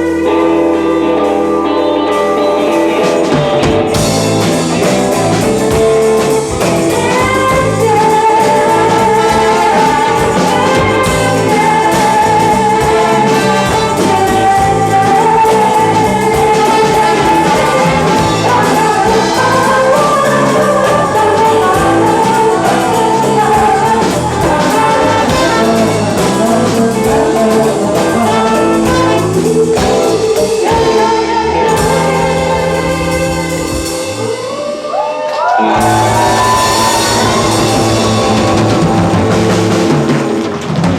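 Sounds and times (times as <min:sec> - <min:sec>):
person singing: 0:00.0 - 0:40.4
live band playing: 0:00.0 - 0:40.9.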